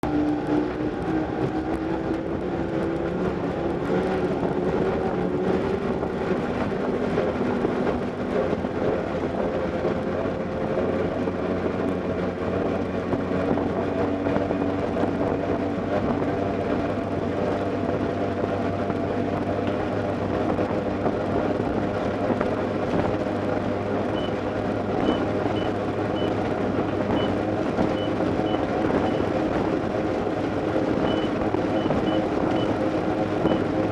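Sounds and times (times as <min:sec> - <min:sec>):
boat engine droning: 0:00.0 - 0:33.9
short high beeps: 0:31.0 - 0:32.7.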